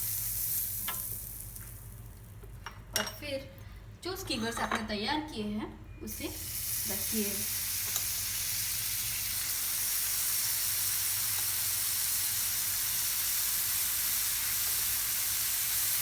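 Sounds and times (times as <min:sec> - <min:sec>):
food sizzling in butter: 0:00.0 - 0:02.2, 0:06.1 - 0:16.0.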